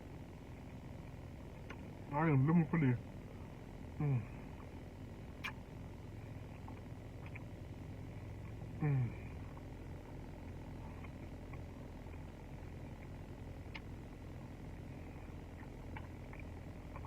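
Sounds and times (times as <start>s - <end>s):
low engine hum: 0.0s - 17.0s
person eating: 15.3s - 17.0s.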